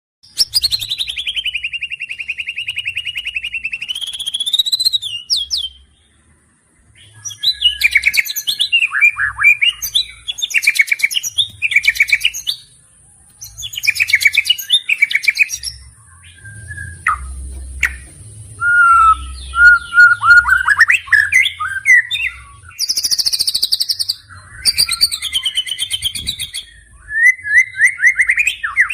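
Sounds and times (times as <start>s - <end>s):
bird trilling and chirping: 0.3s - 6.2s, 6.9s - 28.9s.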